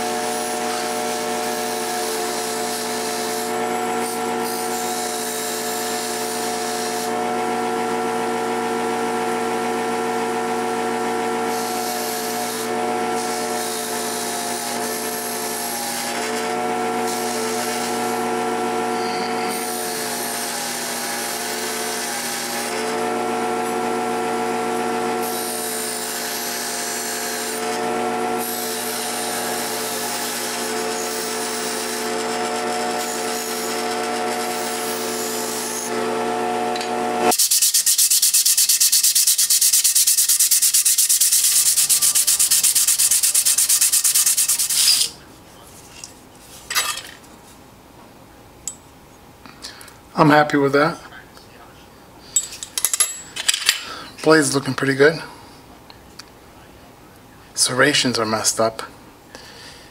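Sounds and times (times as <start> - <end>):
power tool motor running: 0.0 - 45.2
knife blade grinding: 18.9 - 21.2, 36.8 - 45.2.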